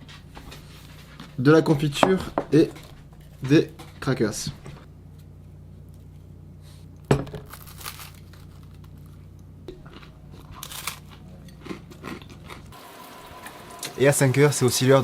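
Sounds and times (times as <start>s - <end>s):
low steady hum: 0.0s - 14.3s
crackers being crunched: 7.4s - 12.8s.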